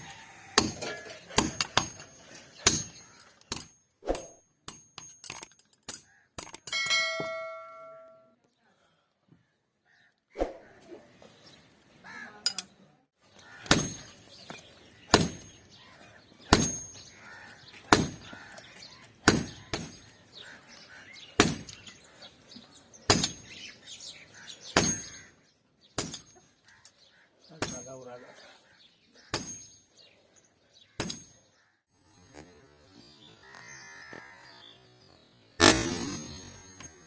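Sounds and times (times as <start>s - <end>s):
hammer striking steel on anvil: 0.0s - 8.2s, 13.7s - 14.2s, 15.1s - 15.7s, 16.5s - 17.2s, 17.9s - 18.4s, 19.3s - 20.4s, 21.4s - 22.0s, 23.1s - 23.7s, 24.8s - 25.3s, 26.0s - 26.6s, 27.6s - 28.1s, 29.4s - 29.9s, 31.0s - 31.5s, 35.6s - 37.0s.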